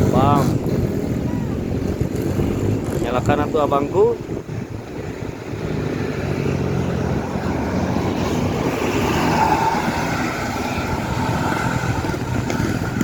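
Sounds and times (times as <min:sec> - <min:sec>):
heavy vehicle engine hum: 0:00.0 - 0:13.0
tyre noise: 0:05.5 - 0:13.0.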